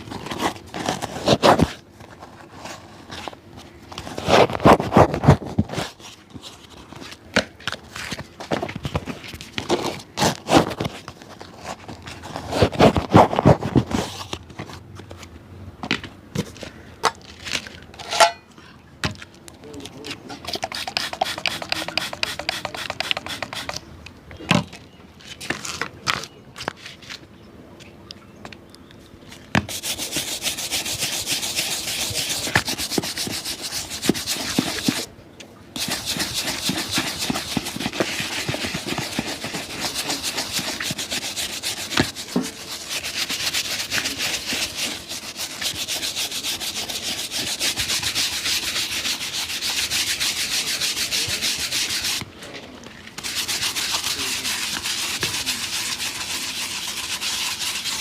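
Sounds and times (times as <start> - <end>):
scraping on shoe: 0.0 - 15.3, 16.4 - 18.5, 20.0 - 23.9, 29.3 - 35.1, 35.8 - 52.3, 53.1 - 58.0
fast rubbing strokes: 20.4 - 23.8, 29.7 - 35.1, 35.8 - 52.2, 53.2 - 58.0.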